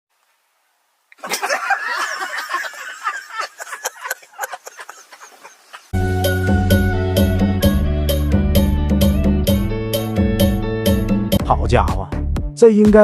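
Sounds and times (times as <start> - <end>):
backing track with a beat: 6.0 - 13.0.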